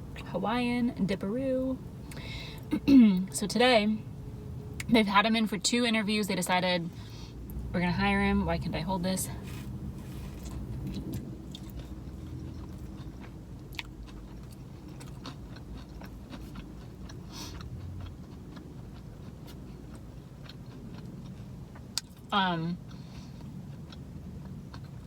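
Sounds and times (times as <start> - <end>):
low steady hum: 0.0 - 25.0
person chewing and crunching: 9.3 - 25.0.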